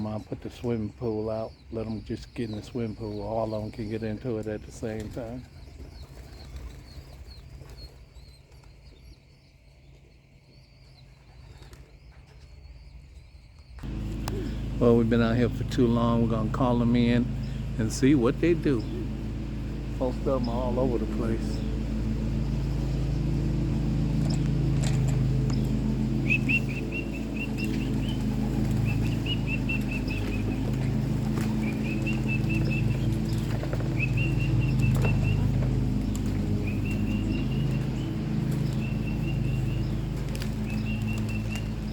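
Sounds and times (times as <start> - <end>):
pigeon wings flapping: 4.8 - 8.8, 11.3 - 12.4, 18.5 - 41.9
high bird chirps: 12.4 - 41.9
steady low hum: 13.8 - 41.9.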